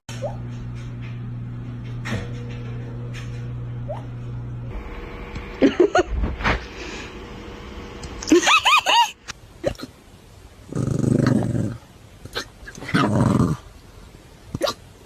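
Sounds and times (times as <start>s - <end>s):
dog growling: 10.7s - 13.7s.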